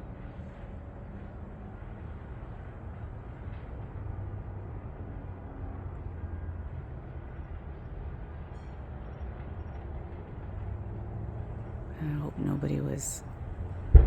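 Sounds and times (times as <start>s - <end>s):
fire rumbling: 0.0s - 14.0s
fire explosions: 12.0s - 14.0s.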